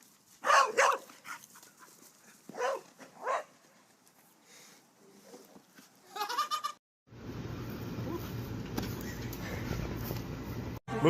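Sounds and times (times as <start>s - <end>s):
dog barking: 0.4s - 1.4s, 2.5s - 3.5s.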